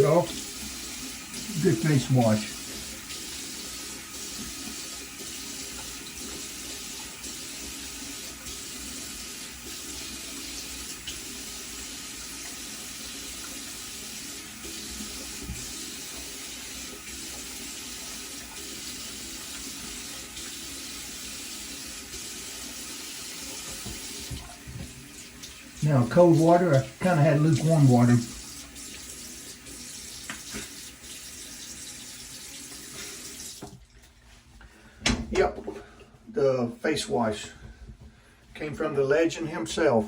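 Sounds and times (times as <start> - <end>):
tap running into sink: 23.3 - 25.6, 30.1 - 31.2.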